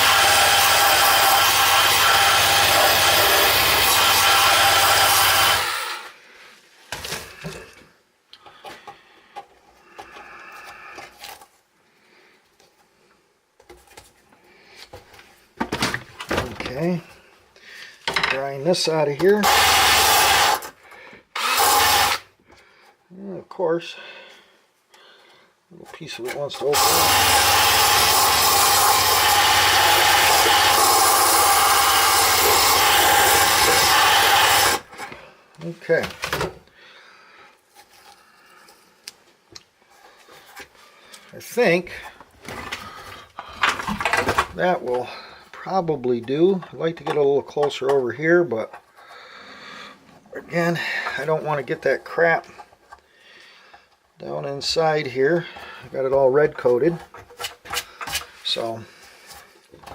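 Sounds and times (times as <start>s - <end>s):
power tool on metal: 0.0s - 6.1s, 19.4s - 20.7s, 21.4s - 22.2s, 26.6s - 34.9s.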